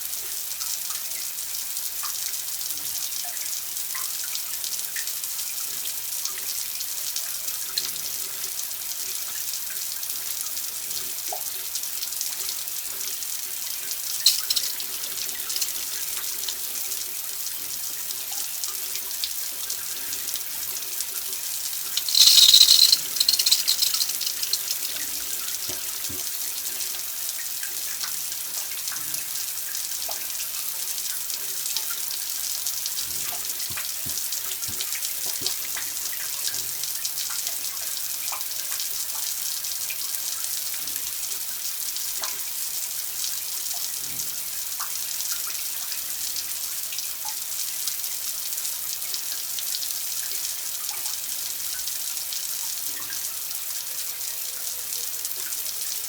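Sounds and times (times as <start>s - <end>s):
water running: 14.2s - 16.4s, 21.6s - 26.2s.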